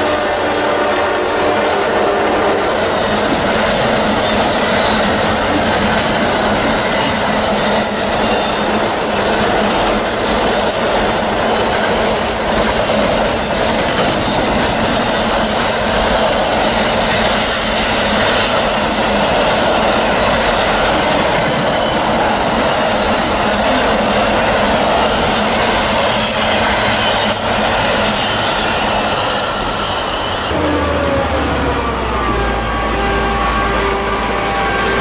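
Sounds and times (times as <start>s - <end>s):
steel wheels rumbling on rails: 0.0s - 35.0s
rail joint clicks: 1.5s - 33.6s.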